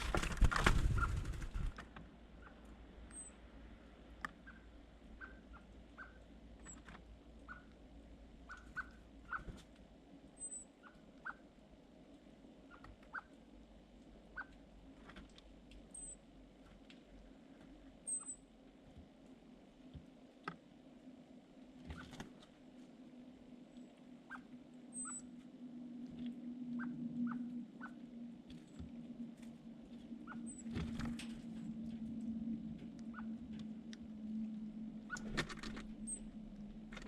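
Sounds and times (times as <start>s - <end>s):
small birds chirping: 2.4s - 3.4s, 4.3s - 7.8s, 8.4s - 9.6s, 10.4s - 11.4s, 12.6s - 13.3s, 14.3s - 14.6s, 18.1s - 18.4s, 23.7s - 25.3s, 30.2s - 30.8s.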